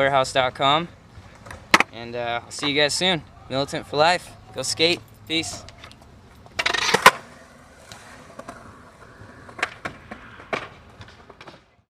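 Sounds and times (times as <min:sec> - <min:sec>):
skateboard clack: 0:01.3 - 0:01.9, 0:05.6 - 0:11.9
skateboard scraping: 0:05.8 - 0:11.9.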